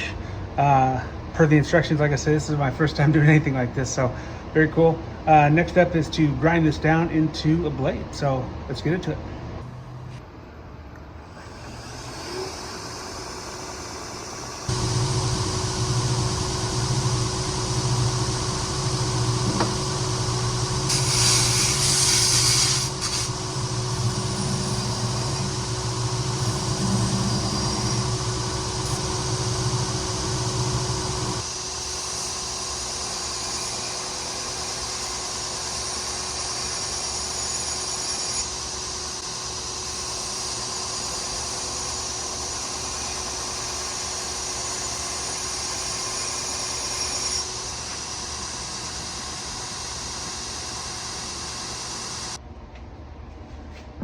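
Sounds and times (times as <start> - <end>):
power grinder grinding steel: 11.4 - 38.7, 39.9 - 52.4
hissing burst of steel on abrasive: 12.1 - 31.5.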